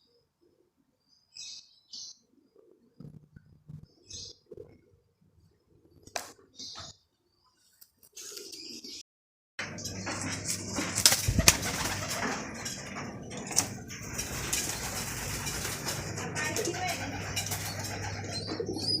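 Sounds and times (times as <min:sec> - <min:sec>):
low hum: 0:09.6 - 0:19.0
pigeons cooing: 0:09.7 - 0:19.0.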